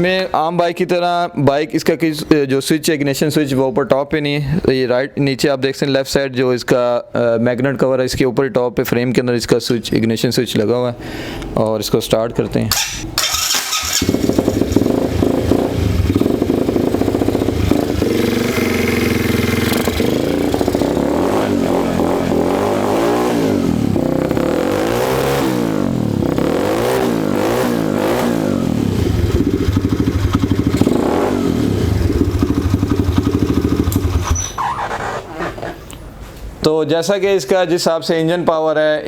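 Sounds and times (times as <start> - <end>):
motorbike engine idling and revving: 12.8 - 34.8.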